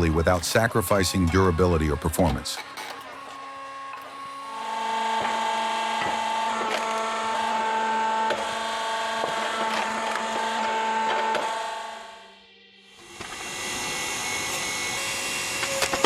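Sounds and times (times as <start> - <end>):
motor and pump whine: 0.0 - 16.0
log cracking and splintering: 9.3 - 10.4.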